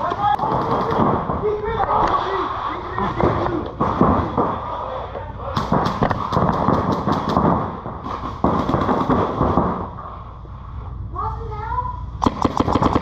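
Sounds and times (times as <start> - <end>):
paintball marker shots: 12.2 - 13.0.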